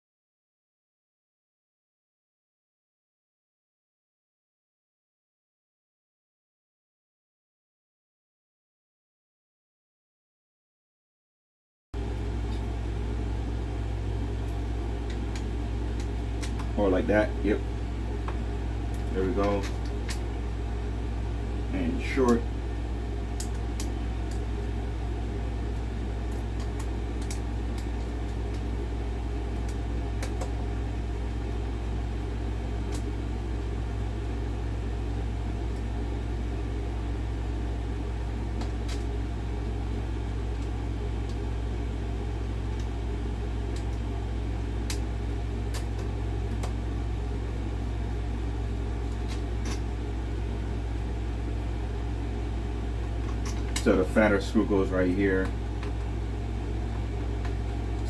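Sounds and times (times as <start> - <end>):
low electrical hum: 12.0 - 58.0.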